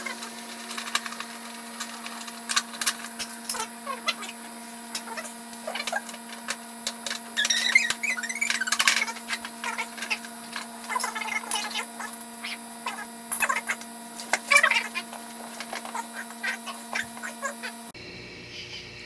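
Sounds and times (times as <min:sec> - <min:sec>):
steady hum: 0:00.0 - 0:19.0
tools clicking and tapping: 0:04.9 - 0:12.2
short squeaks: 0:07.4 - 0:09.2.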